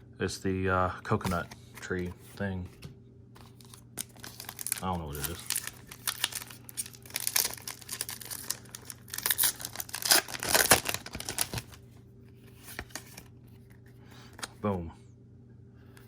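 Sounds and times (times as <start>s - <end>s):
foil wrapper crinkling and tearing: 3.5s - 11.8s.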